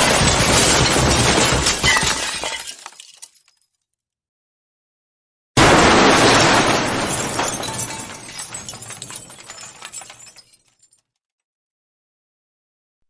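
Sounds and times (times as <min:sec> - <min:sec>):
glass shattering: 0:00.0 - 0:03.6, 0:05.6 - 0:10.9
glass shards tinkling: 0:07.0 - 0:10.8.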